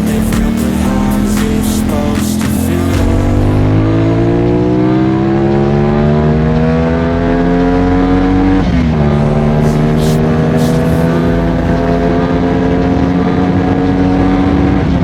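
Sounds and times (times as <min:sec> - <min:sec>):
motorcycle engine accelerating: 0:00.0 - 0:15.0.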